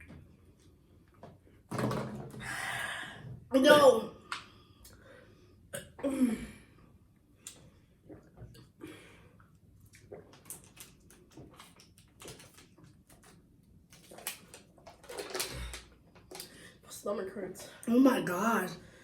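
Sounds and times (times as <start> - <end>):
gulping water from plastic bottles: 9.8 - 12.8, 14.0 - 16.7
plastic bottle crackles: 10.3 - 16.5.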